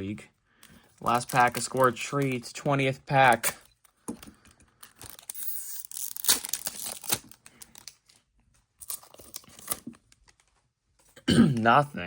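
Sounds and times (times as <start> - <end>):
wrapper tearing and crinkling: 4.8 - 8.2, 8.8 - 10.4.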